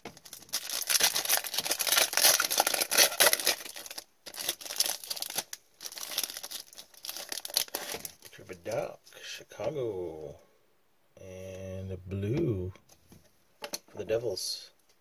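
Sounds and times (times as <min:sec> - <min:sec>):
wrapper crinkling: 0:00.1 - 0:08.8.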